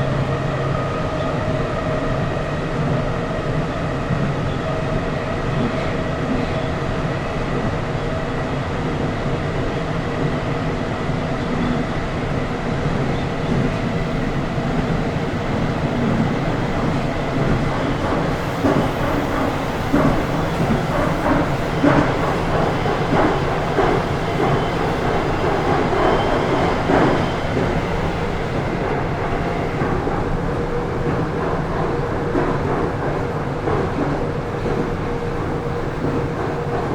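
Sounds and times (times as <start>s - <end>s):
train rumble and rail noise: 0.0s - 36.9s
clacks over rails: 13.3s - 36.9s.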